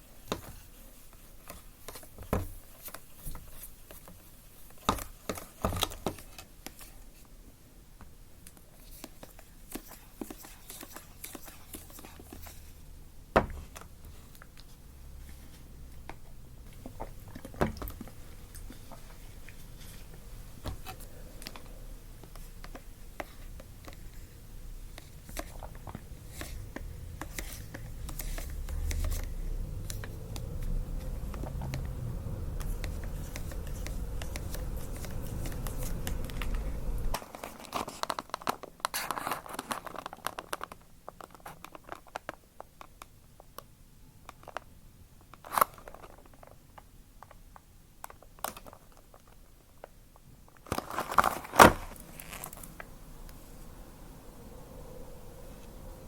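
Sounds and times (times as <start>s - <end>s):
low handling rumble: 28.6s - 37.2s
paper and plastic crinkling: 32.6s - 43.0s, 45.3s - 46.6s, 50.5s - 52.9s.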